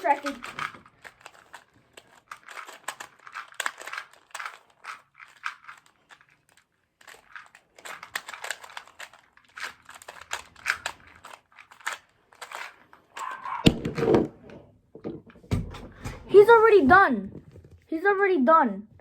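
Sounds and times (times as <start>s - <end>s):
puzzle cube clicking and rattling: 0.0s - 17.8s
loud thump: 13.7s - 14.4s.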